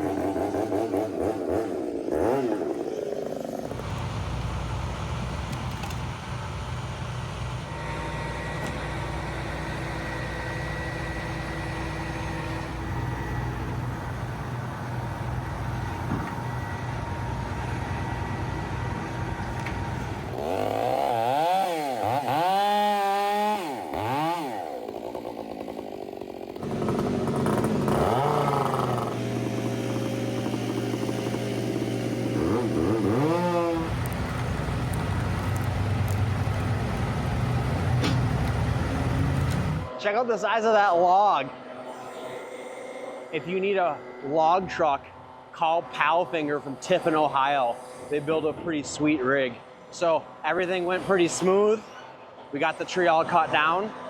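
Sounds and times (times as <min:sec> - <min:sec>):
chainsaw revving: 0:00.0 - 0:04.4, 0:07.7 - 0:39.9
large engine droning: 0:00.0 - 0:40.0, 0:41.0 - 0:54.0.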